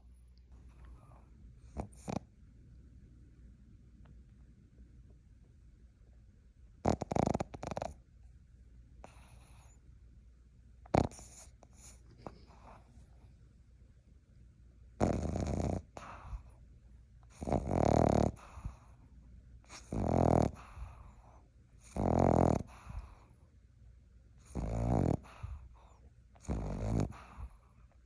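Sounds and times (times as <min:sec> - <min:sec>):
dog quiet breathing: 0:00.0 - 0:02.3, 0:09.0 - 0:10.0, 0:10.9 - 0:13.5, 0:15.0 - 0:23.6, 0:24.3 - 0:28.0
puppy snoring: 0:00.0 - 0:02.3, 0:06.8 - 0:08.1, 0:09.0 - 0:09.8, 0:10.8 - 0:13.3, 0:15.0 - 0:16.6, 0:17.2 - 0:19.0, 0:19.6 - 0:23.4, 0:24.4 - 0:28.0.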